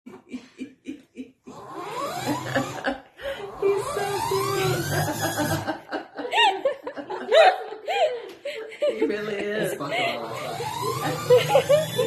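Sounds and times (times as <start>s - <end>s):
toy spaceship rising whirring tones: 1.5s - 2.9s, 3.5s - 5.7s, 10.2s - 12.0s.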